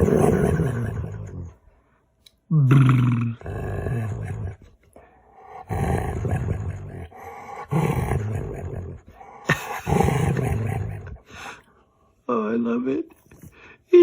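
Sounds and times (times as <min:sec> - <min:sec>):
dog growling playfully: 0:00.0 - 0:01.6, 0:02.5 - 0:11.6.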